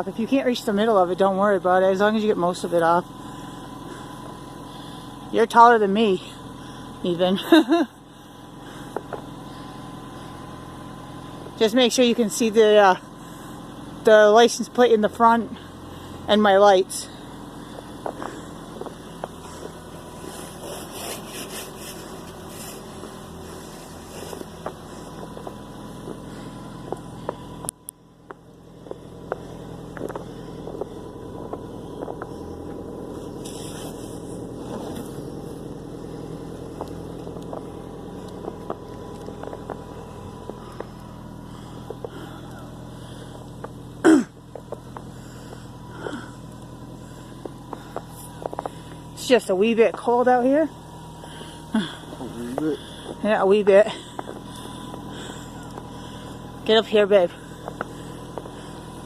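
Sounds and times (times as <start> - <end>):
car engine idling: 0.0 - 59.0
snow brushing scrapes and knocks: 18.1 - 27.5, 33.0 - 40.9.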